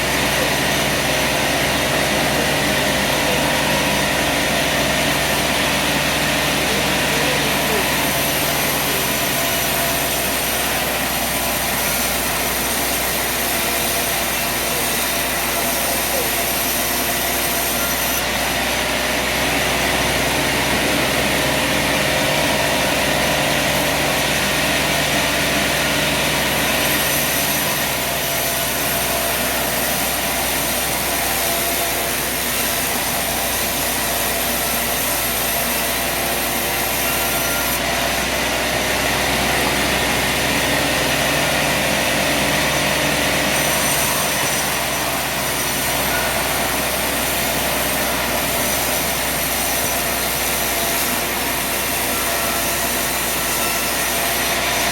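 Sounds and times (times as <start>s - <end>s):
saw hissing: 0.0s - 54.9s
sawmill engine drone: 0.0s - 54.9s.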